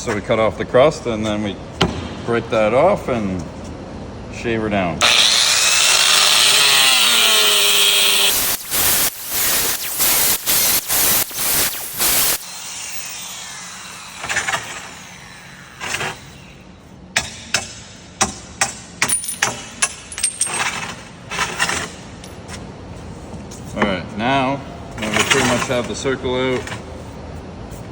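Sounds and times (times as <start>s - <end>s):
angle grinder cutting tile: 5.0s - 16.7s.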